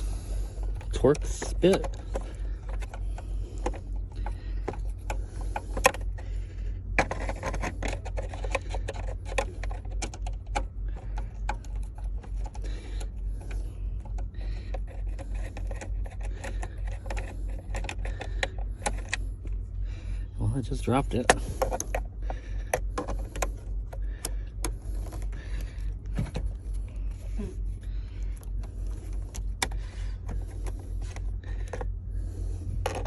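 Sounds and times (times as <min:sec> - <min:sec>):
steady low hum: 0:00.0 - 0:33.0
screwdriver clicks and rattles: 0:00.6 - 0:06.2, 0:07.0 - 0:19.2, 0:21.1 - 0:27.2.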